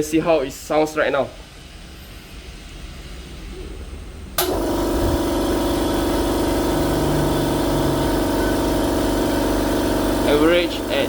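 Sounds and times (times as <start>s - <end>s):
air compressor humming: 4.4s - 11.0s.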